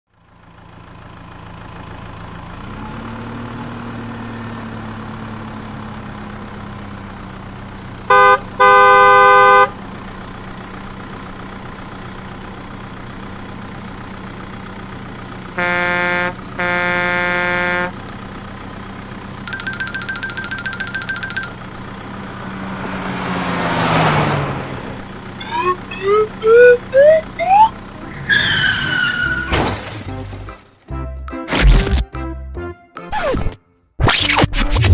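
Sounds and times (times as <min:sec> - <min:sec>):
double horn honks: 0:08.1 - 0:09.8, 0:15.6 - 0:18.0
cartoon engine hum: 0:19.5 - 0:28.1.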